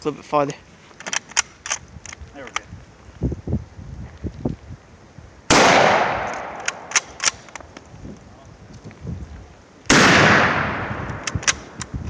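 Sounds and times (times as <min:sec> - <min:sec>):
rifle shot echoing: 0:05.5 - 0:07.4, 0:09.9 - 0:11.8
rifle bolt clicks: 0:05.9 - 0:07.7, 0:11.0 - 0:11.9.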